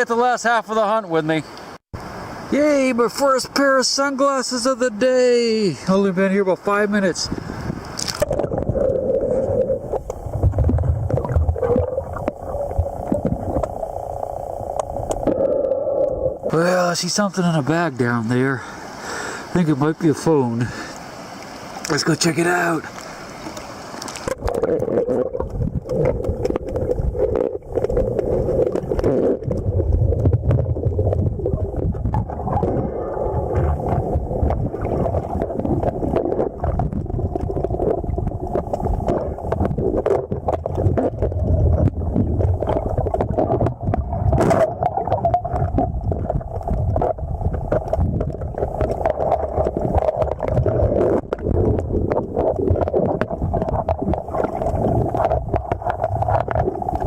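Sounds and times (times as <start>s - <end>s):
muffled river water underwater: 1.4s - 57.0s.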